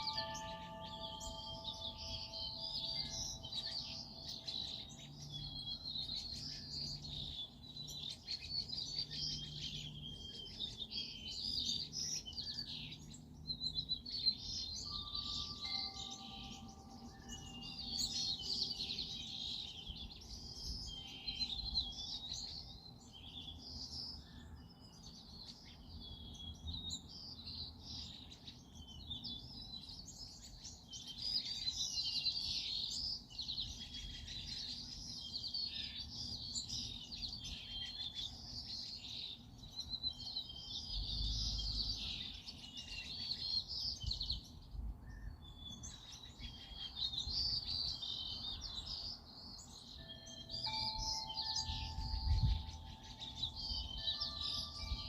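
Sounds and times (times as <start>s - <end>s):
faint chime-like tones: 0.0s - 6.7s, 14.4s - 22.8s, 49.8s - 55.0s
songbirds chirping and twittering: 0.0s - 55.0s.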